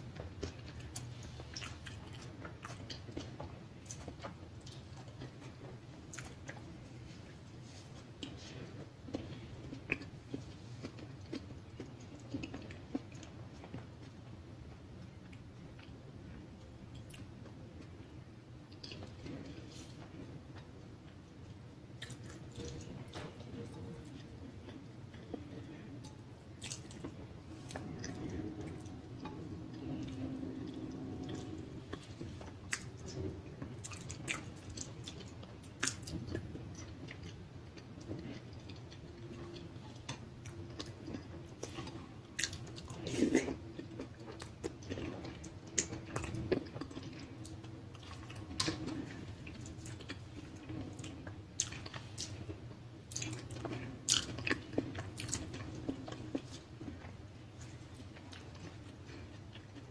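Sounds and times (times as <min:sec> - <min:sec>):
chewing and wet smacking: 0:00.0 - 0:18.1, 0:18.7 - 0:59.9.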